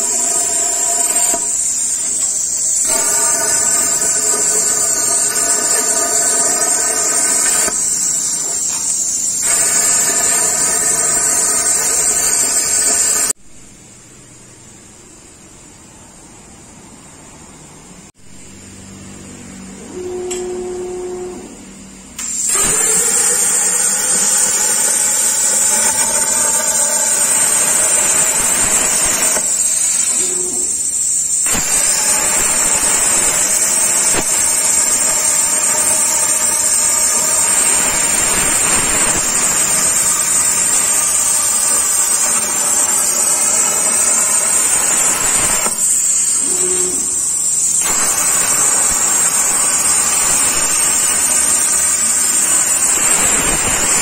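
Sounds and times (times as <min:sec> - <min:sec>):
plasma cutter torch hissing: 0:00.0 - 0:13.4, 0:22.2 - 0:54.0
high steady tone: 0:22.6 - 0:54.0.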